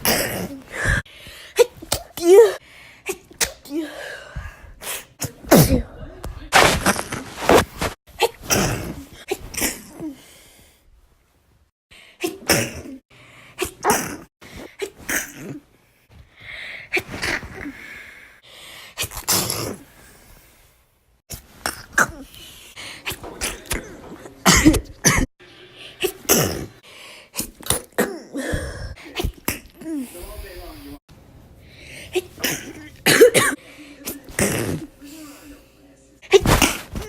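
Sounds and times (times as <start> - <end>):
person sneezing: 8.2 - 10.2, 12.2 - 13.0, 13.6 - 15.6, 26.0 - 26.8, 32.1 - 34.9.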